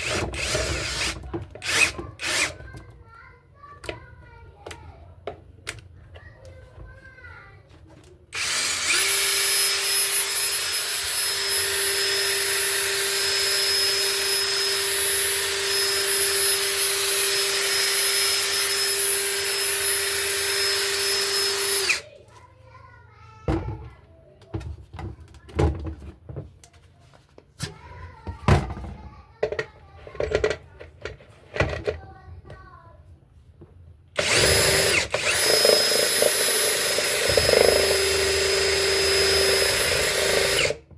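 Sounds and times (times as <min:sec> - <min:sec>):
electric drill whining: 0:00.0 - 0:02.6, 0:08.4 - 0:22.0, 0:34.2 - 0:40.8.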